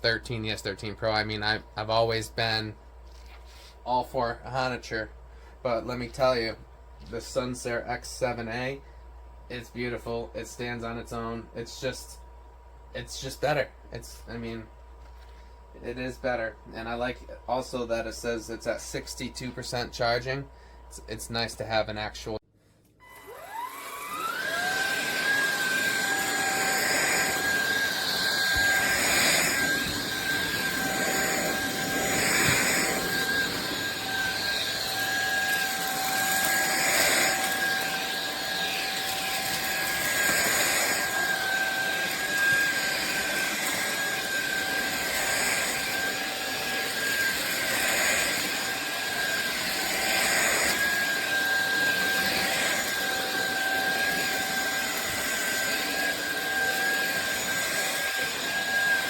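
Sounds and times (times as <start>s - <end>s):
stick vacuum cleaner whining: 22.9s - 59.0s.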